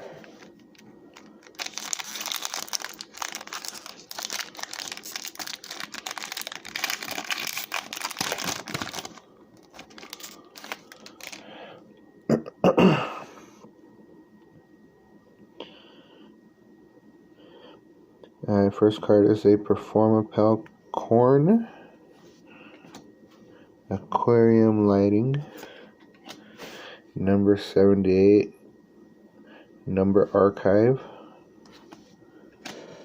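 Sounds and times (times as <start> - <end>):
foil wrapper tearing and crinkling: 1.2 - 11.4.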